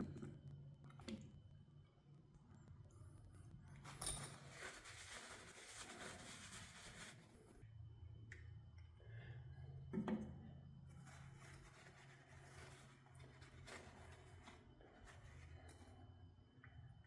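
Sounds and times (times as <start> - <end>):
low steady hum: 0.0 - 17.0
faint scraping and rustling: 3.0 - 7.6, 10.8 - 16.2.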